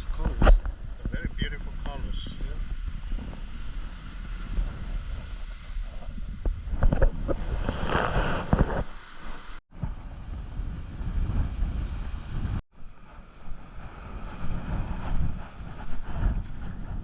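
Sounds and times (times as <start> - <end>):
wind buffeting microphone: 0.0 - 17.0
ocean surf: 1.6 - 16.2.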